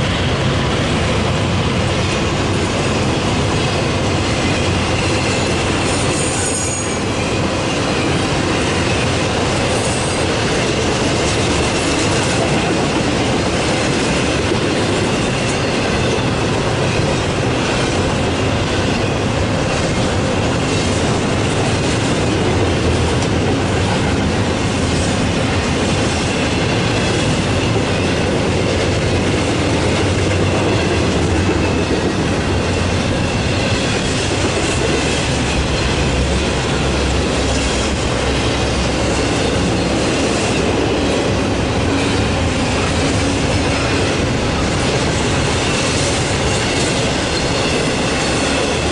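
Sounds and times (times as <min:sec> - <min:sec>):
freight train wheels clacking: 0:00.0 - 0:48.9
faint high wheel squeal: 0:04.5 - 0:07.5.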